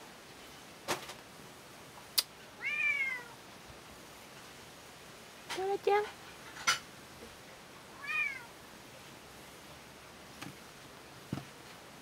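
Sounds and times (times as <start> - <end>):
cat meowing: 2.6 - 3.4, 7.9 - 8.5.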